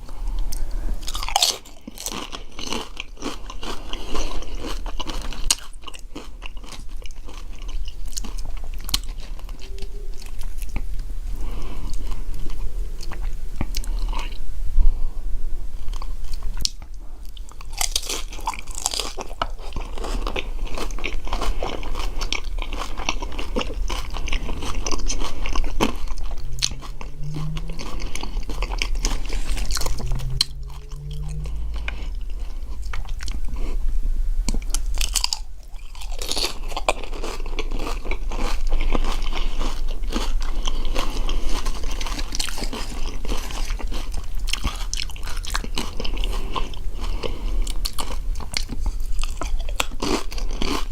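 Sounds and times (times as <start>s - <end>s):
crunching and chewing chips: 0.1s - 14.4s, 15.8s - 33.8s, 34.5s - 50.9s.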